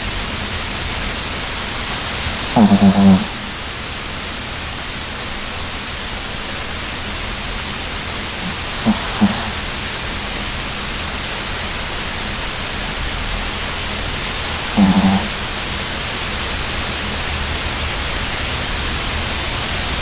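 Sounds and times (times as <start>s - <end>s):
steady hiss: 0.0s - 20.0s
dog snoring: 1.8s - 3.5s, 8.3s - 9.7s, 14.0s - 15.7s.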